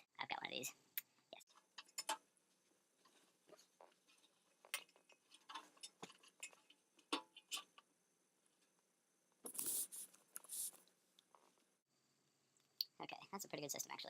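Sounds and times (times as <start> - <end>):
small objects clicking and tapping: 0.9 - 2.4, 3.0 - 7.9.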